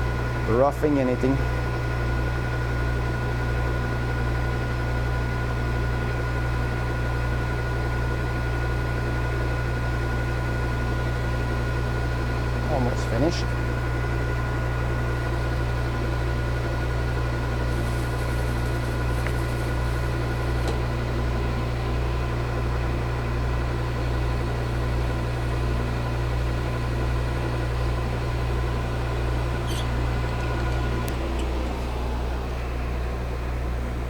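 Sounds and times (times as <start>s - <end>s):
metal lathe humming and whining: 11.5s - 34.0s.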